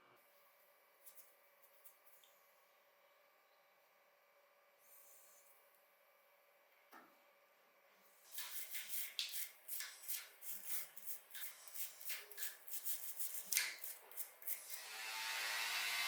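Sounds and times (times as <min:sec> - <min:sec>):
small electric motor buzzing: 0:10.4 - 0:16.0.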